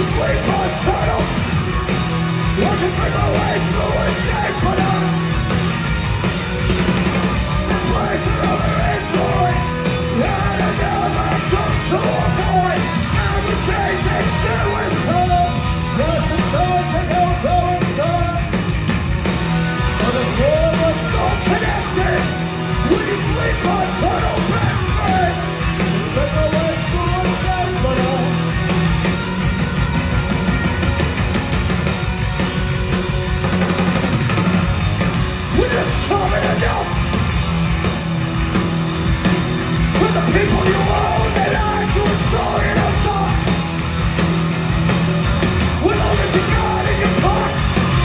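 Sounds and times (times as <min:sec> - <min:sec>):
shouted lead vocal: 0:00.0 - 0:05.5, 0:07.3 - 0:18.6, 0:19.6 - 0:28.6, 0:35.4 - 0:37.3, 0:39.8 - 0:44.0, 0:45.5 - 0:48.0
punk rock band playing live: 0:00.0 - 0:48.0.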